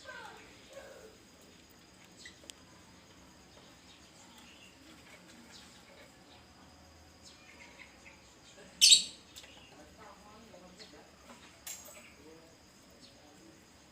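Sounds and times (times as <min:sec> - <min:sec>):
lovebirds chirping: 0:02.0 - 0:12.2
loud shrill bird call: 0:08.8 - 0:09.2.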